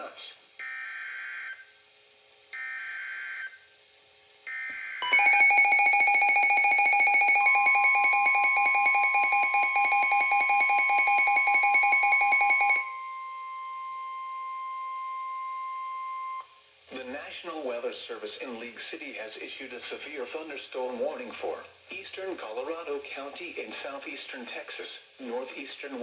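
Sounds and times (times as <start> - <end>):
steady warning tone: 4.6 - 16.6.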